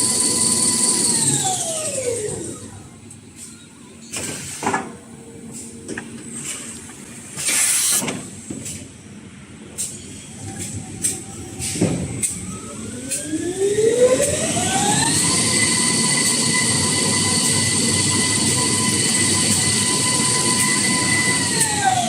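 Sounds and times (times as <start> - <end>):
machine whine rising in pitch: 0.0 - 2.8, 12.4 - 22.0.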